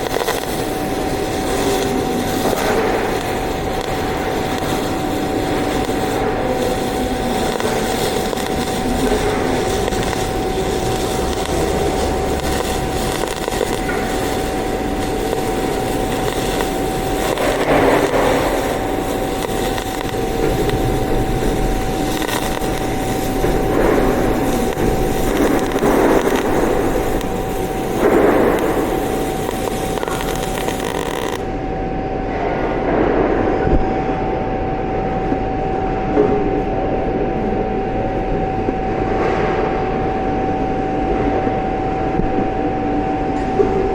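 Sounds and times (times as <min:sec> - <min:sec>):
welding arc crackling: 0:00.0 - 0:31.7
constant high whine: 0:00.0 - 0:43.9.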